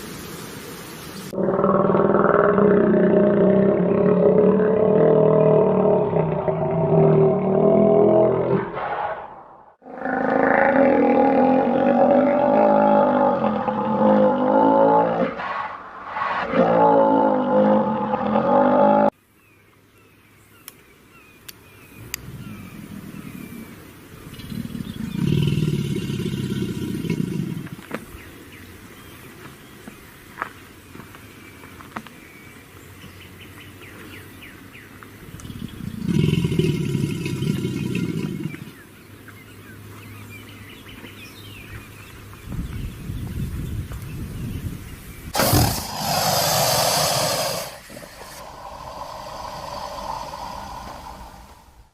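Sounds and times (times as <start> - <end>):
creature roar: 1.4 - 15.7, 16.3 - 19.1, 45.4 - 51.9
low rough growl: 1.4 - 19.1, 45.4 - 51.9.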